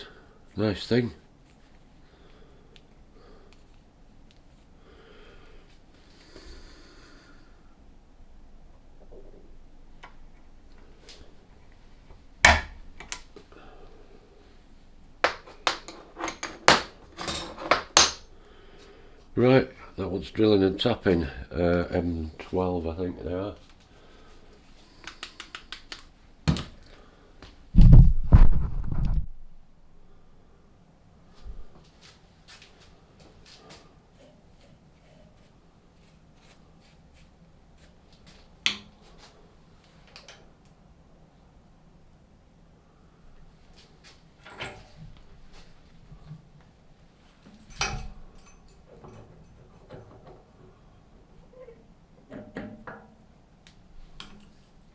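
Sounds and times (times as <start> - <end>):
workshop knocks and clinks: 12.4 - 13.2, 15.3 - 18.2, 47.6 - 50.6
light clicks of metal parts: 38.2 - 40.8, 47.4 - 50.6.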